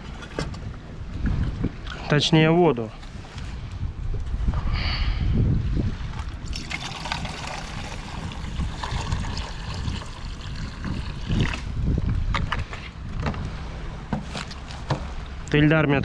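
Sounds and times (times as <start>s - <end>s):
wind on microphone: 0.0s - 2.3s, 3.0s - 14.2s
water pouring into a pot: 6.4s - 11.6s.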